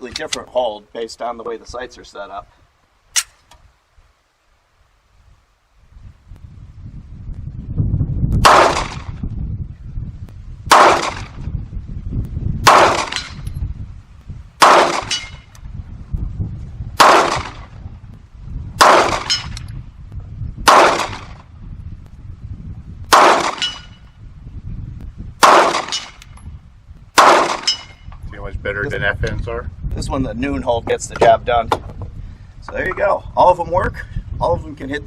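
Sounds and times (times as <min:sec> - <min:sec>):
pistol shots: 0:08.4 - 0:09.1, 0:10.7 - 0:11.4, 0:12.6 - 0:13.4, 0:14.6 - 0:15.4, 0:17.0 - 0:17.7, 0:18.8 - 0:19.6, 0:20.6 - 0:21.4, 0:23.1 - 0:23.9, 0:25.4 - 0:26.2, 0:27.2 - 0:28.0.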